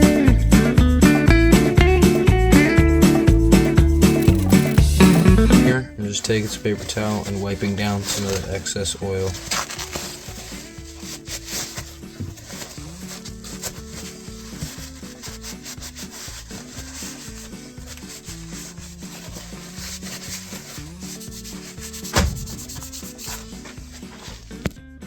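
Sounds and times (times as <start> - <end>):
scrubbing knife handle: 4.0 - 5.4, 6.5 - 24.6
sharp knock: 22.1 - 22.8.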